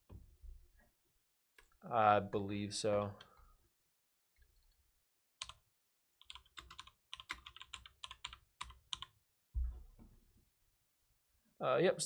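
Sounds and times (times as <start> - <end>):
computer keyboard typing: 6.2 - 9.1.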